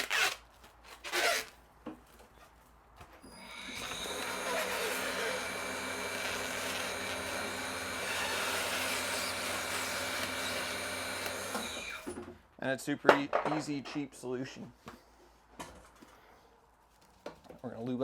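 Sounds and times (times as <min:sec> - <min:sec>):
tire changer machine motor hum: 0:03.3 - 0:12.1.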